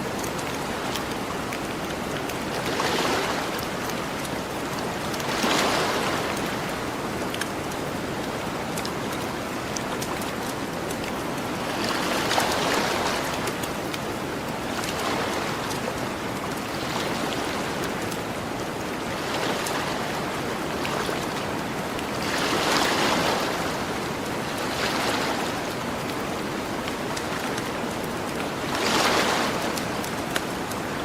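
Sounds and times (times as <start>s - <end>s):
ocean waves washing onto beach: 0.0s - 31.0s
campfire crackling: 3.5s - 5.3s, 6.6s - 11.6s, 29.7s - 31.0s.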